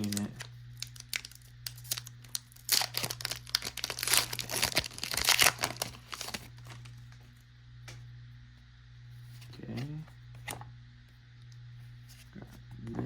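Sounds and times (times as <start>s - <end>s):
foil wrapper tearing and crinkling: 0.0s - 7.0s.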